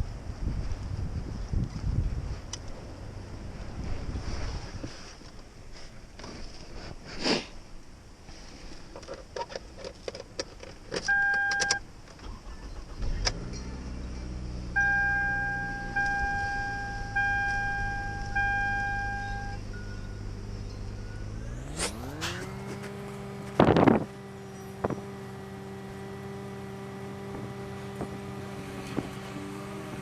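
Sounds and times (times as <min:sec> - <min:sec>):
car engine starting and idling: 0:09.0 - 0:30.0
long electronic warning beeps: 0:11.1 - 0:11.8, 0:14.8 - 0:20.3
short electronic beep: 0:14.8 - 0:21.4.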